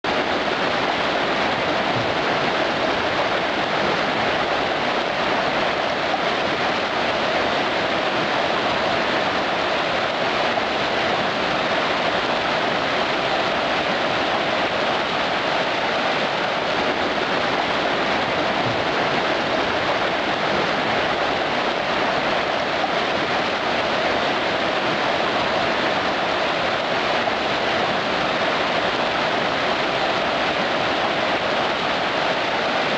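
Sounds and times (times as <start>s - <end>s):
fast river water rushing: 0.0s - 32.9s.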